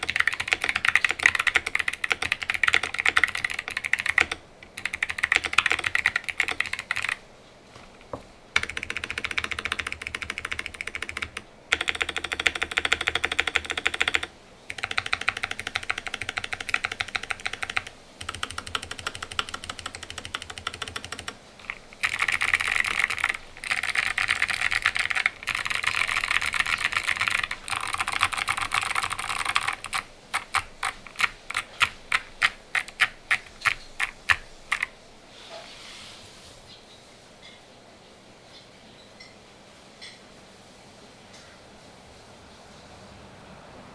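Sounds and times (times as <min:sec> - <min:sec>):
mechanical keyboard typing clicks: 0:00.0 - 0:07.2, 0:07.8 - 0:34.9.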